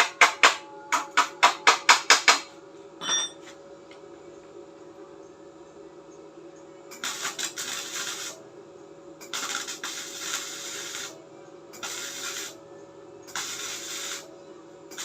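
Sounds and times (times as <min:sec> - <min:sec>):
welder machine hum: 0:06.9 - 0:08.5, 0:09.2 - 0:15.0
welding arc crackling: 0:07.0 - 0:08.4, 0:09.2 - 0:11.2, 0:11.8 - 0:12.6, 0:13.3 - 0:14.3.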